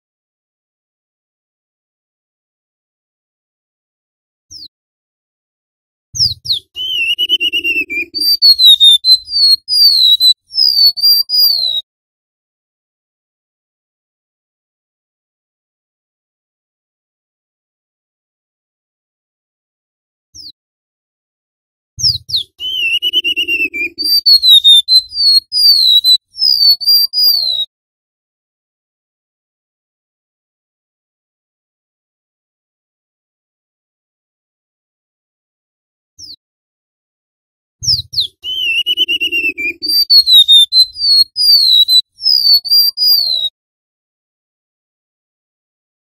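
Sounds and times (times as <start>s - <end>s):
bird singing whistles: 6.2s - 11.8s, 22.0s - 27.7s, 37.8s - 43.5s.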